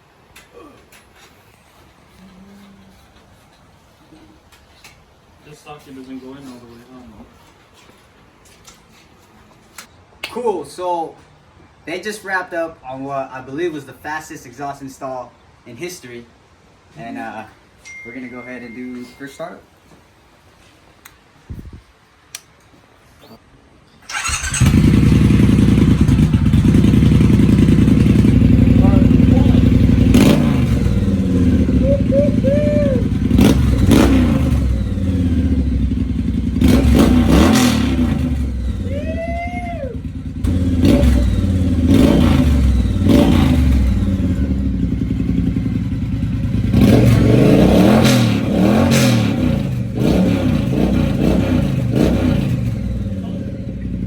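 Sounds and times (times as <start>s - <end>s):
motorcycle engine cranking: 24.0s - 31.8s, 40.0s - 45.5s
motorcycle engine idling loudly: 24.2s - 32.3s, 39.9s - 47.4s, 52.6s - 54.0s.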